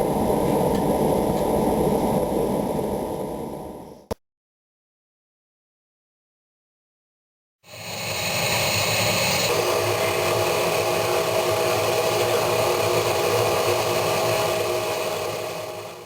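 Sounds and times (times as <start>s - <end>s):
workshop machine motor running: 8.1s - 16.0s.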